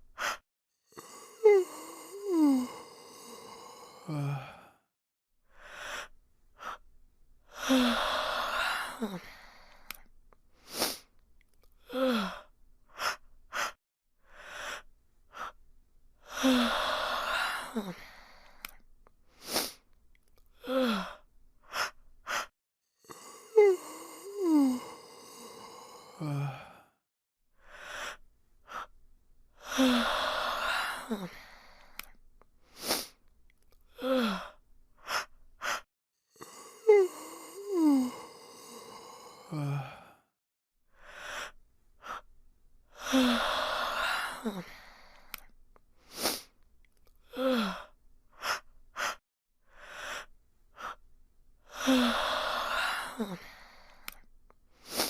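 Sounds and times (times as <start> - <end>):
person yawning: 1.2 - 4.7, 23.3 - 26.8, 36.6 - 40.2.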